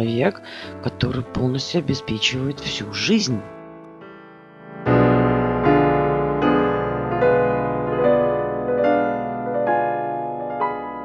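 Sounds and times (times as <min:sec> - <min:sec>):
slow piano music: 0:00.0 - 0:11.0.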